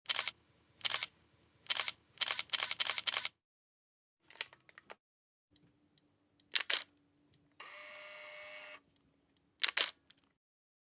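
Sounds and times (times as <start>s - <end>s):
camera shutter clicks: 1.7s - 3.4s, 6.5s - 6.9s, 9.6s - 10.0s.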